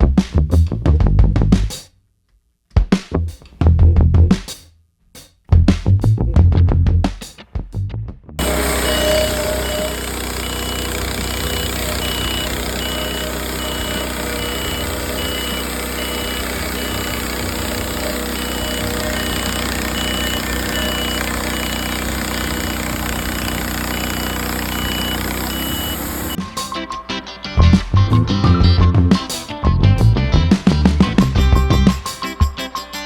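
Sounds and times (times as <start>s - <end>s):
faint high beeps: 8.4s - 26.4s
sawmill engine running: 8.4s - 26.4s.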